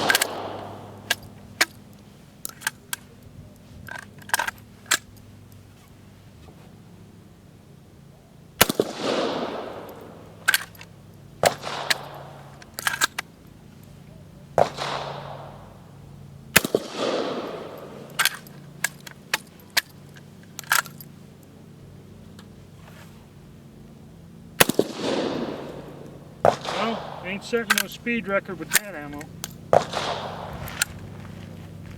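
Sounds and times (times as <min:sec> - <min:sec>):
shotgun shots echoing: 0:00.0 - 0:01.7, 0:08.6 - 0:10.8, 0:11.4 - 0:13.0, 0:14.6 - 0:18.8, 0:24.6 - 0:31.0.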